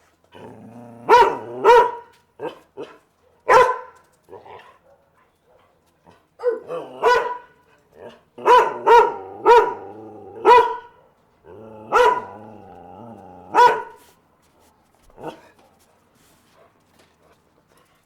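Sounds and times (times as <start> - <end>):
dog growling: 0.3 - 1.7, 8.0 - 10.6, 11.4 - 14.0
dog barking: 1.1 - 5.8, 6.4 - 7.6, 8.4 - 11.1, 11.9 - 12.5, 13.5 - 14.0, 15.2 - 15.6.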